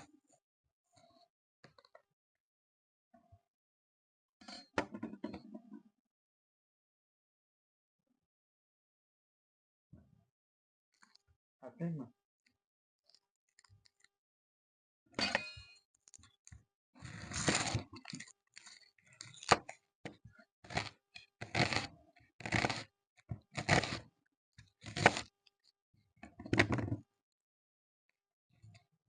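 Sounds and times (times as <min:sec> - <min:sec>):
knife cutting crunchy vegetable: 0:20.7 - 0:22.9, 0:23.5 - 0:24.0, 0:24.8 - 0:25.3.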